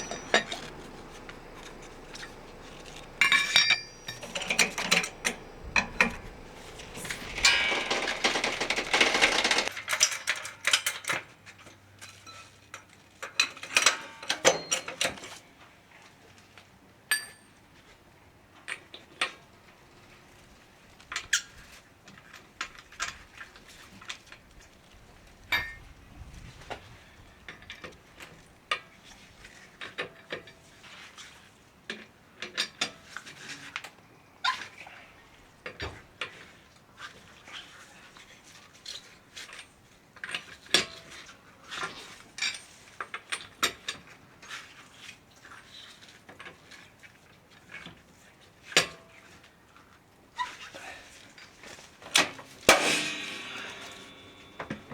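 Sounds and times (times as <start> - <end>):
metal tools and nuts clinking: 0.0 - 9.7, 52.7 - 54.9.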